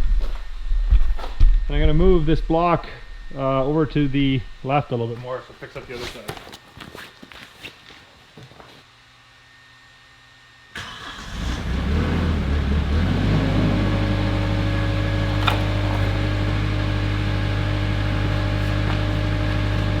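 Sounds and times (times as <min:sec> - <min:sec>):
diesel engine starting and idling: 0:10.8 - 0:20.0.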